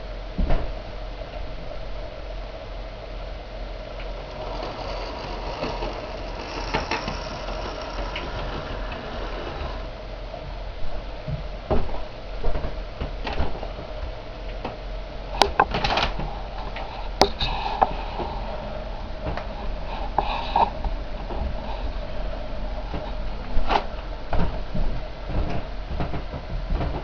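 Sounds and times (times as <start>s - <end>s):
wheels clicking on rail joints: 3.4s - 10.1s
model train motor whirring: 3.8s - 10.0s.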